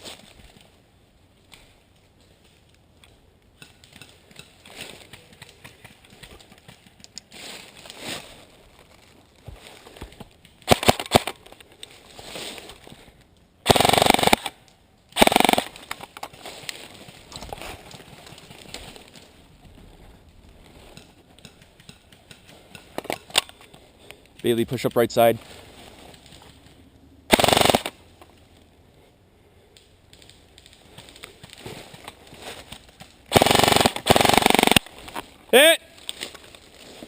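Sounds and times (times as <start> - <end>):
airsoft rifle shots: 10.6 - 11.4, 13.6 - 14.5, 15.2 - 15.8, 27.3 - 28.0, 33.3 - 34.9.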